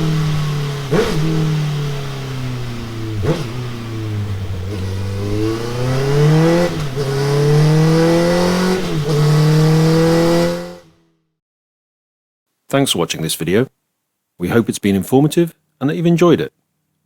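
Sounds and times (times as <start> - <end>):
motorcycle engine revving on a dyno: 0.0 - 11.0.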